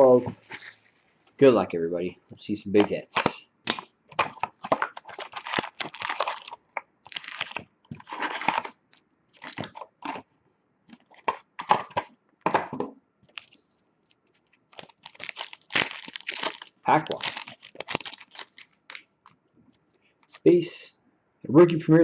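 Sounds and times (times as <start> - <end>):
plastic wrapping crinkling: 0.1 - 1.3, 3.1 - 10.2, 13.3 - 19.4, 20.2 - 20.5.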